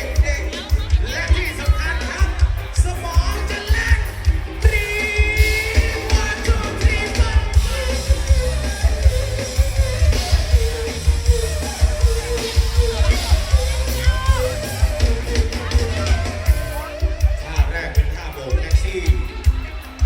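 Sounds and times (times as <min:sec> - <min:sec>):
live band playing pop-rock: 0:00.0 - 0:20.0
person singing long notes: 0:04.6 - 0:08.6.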